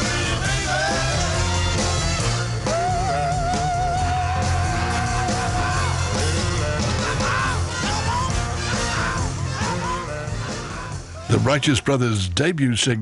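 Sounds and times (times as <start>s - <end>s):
person singing: 0.0s - 1.7s, 2.6s - 10.1s
bass and drum beat: 0.0s - 12.2s.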